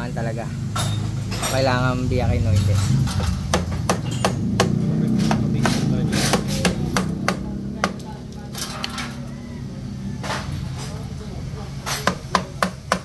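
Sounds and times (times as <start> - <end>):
metal parts clinking: 8.5 - 9.2.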